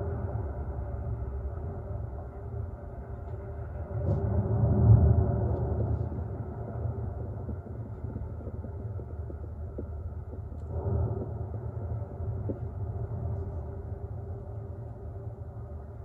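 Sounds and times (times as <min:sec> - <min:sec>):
volcano rumbling: 0:03.4 - 0:16.0.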